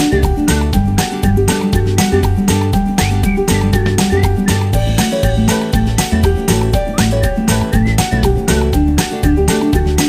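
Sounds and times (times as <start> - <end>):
upbeat background music: 0.0 - 10.0.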